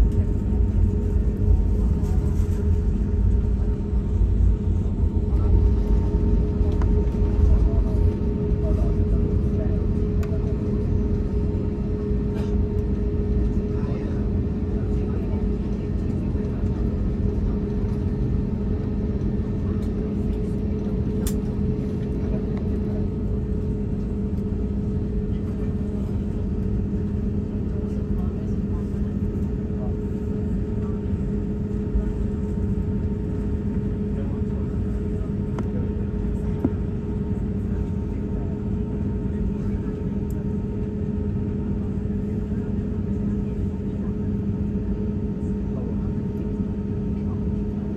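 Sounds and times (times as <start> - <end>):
low hum: 0.0 - 11.1
engine rumble: 0.0 - 15.3
engine rumble with low hum: 0.0 - 47.9.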